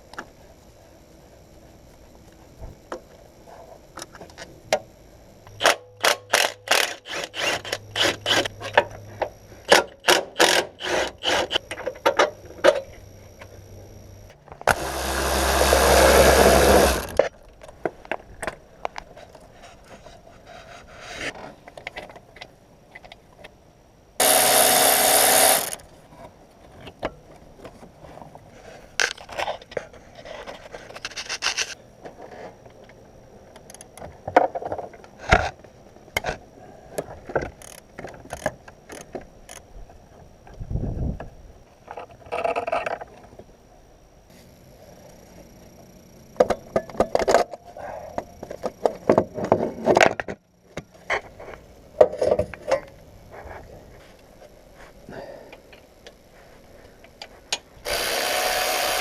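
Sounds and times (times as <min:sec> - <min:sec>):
power tool bursts: 0:05.6 - 0:08.8, 0:09.6 - 0:12.8, 0:14.7 - 0:17.2, 0:24.2 - 0:25.8, 0:57.8 - 0:59.0.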